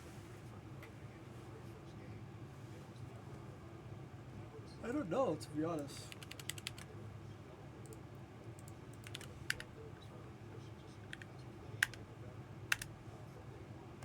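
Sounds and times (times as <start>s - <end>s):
keyboard keys clicking: 6.1s - 6.9s, 8.6s - 9.7s, 11.1s - 12.0s.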